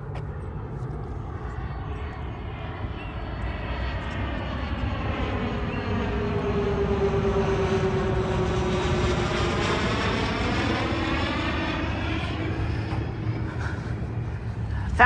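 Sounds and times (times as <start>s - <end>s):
airplane flying low overhead: 0.0s - 15.0s.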